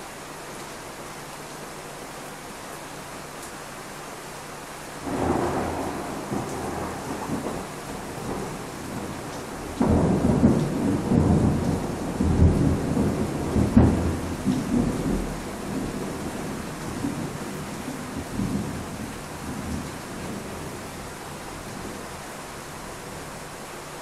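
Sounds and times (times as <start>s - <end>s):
steady rain hiss: 0.0s - 24.0s
thunder rumbling and clapping: 5.1s - 20.6s.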